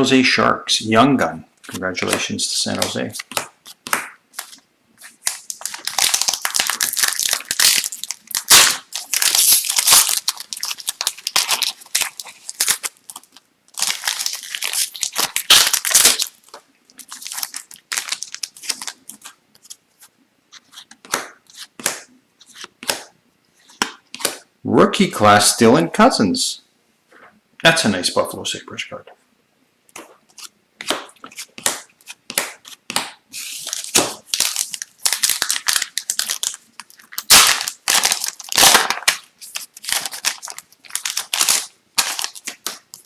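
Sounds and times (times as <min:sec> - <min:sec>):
card pack wrappers tearing: 0:04.4 - 0:19.8, 0:33.4 - 0:43.0.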